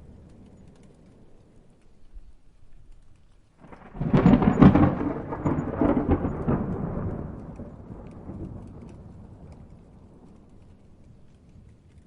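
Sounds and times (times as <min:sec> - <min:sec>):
light rain: 0:00.0 - 0:12.0
thunder cracking and rumbling: 0:03.6 - 0:12.0.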